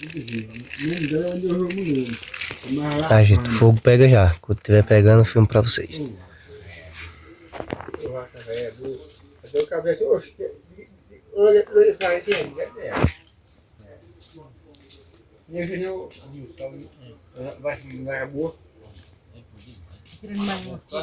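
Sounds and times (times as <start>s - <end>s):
people talking: 0.0s - 10.6s
crickets chirring: 0.0s - 21.0s.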